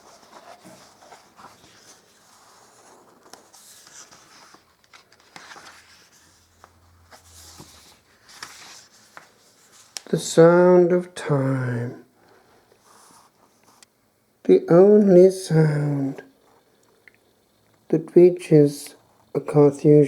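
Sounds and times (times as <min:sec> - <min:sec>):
faint scratching and rustling: 0:00.0 - 0:10.2, 0:12.8 - 0:13.9.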